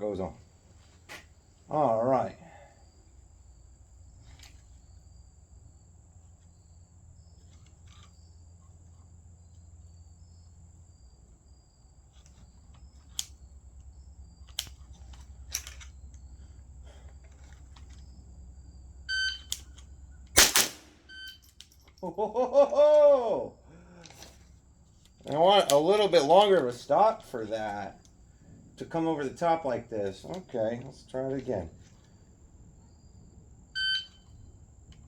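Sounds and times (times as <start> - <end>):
rifle clicks and knocks: 14.4 - 16.2.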